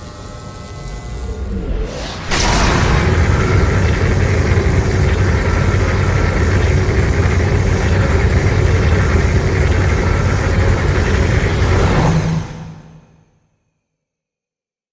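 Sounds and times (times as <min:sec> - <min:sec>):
deep monster rumble: 0:01.4 - 0:13.0.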